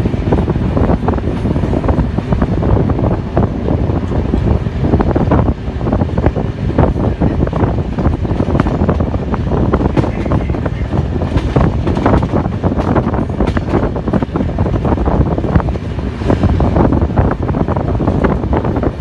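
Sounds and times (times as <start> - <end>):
train rumbling past: 0.0 - 19.0
wind buffeting microphone: 0.0 - 19.0
train wheels clacking: 6.8 - 16.8.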